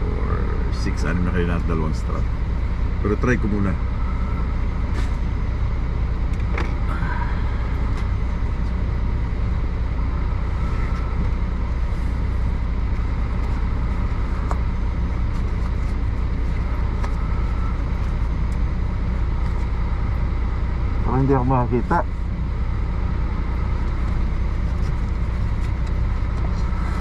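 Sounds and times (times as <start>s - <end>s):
truck engine idling: 0.0s - 27.0s
faint clicks and rustles: 23.8s - 27.0s.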